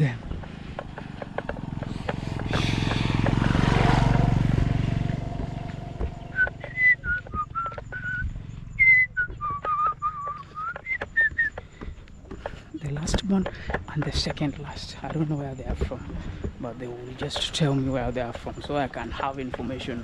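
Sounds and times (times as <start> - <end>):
low engine-like rumble: 0.0 - 20.0
person whistling high notes: 6.4 - 11.6.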